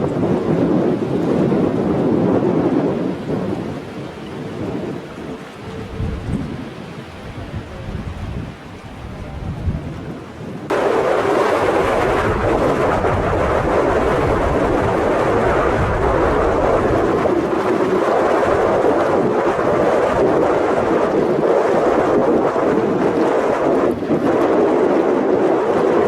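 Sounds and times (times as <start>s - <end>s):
wind buffeting microphone: 0.0s - 26.0s
jet engines roaring: 10.7s - 26.0s.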